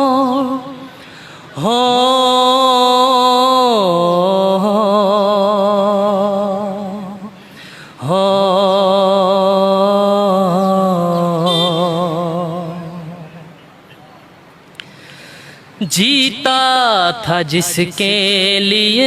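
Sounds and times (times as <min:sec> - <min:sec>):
man singing unaccompanied: 0:00.0 - 0:07.4, 0:08.0 - 0:13.6, 0:15.8 - 0:19.0.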